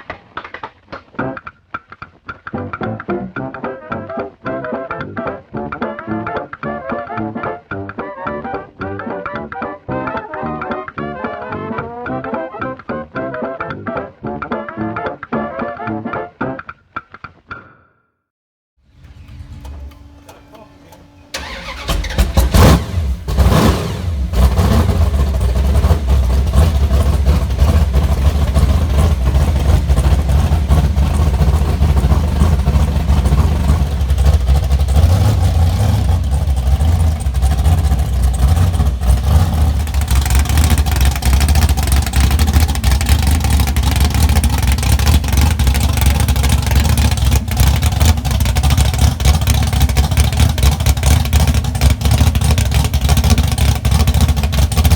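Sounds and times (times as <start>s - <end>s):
car engine revving and droning: 18.9s - 54.9s.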